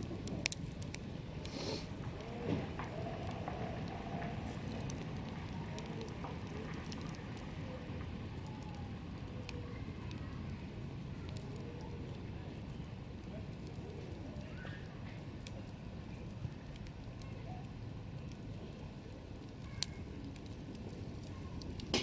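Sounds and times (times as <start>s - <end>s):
low fire rumble: 0.0s - 22.0s
wood crackling in campfire: 0.0s - 22.0s
brief hiss: 1.5s - 1.9s.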